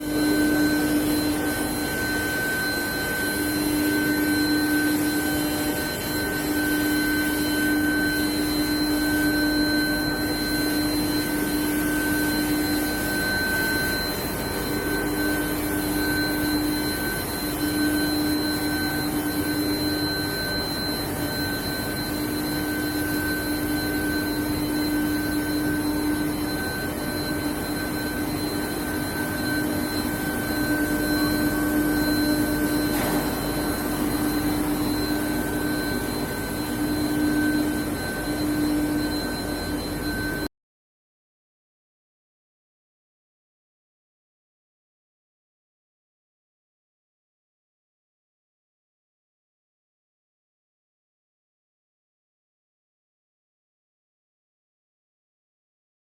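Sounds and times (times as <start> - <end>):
machine hum: 0.0 - 40.5
machine whines: 0.0 - 40.5.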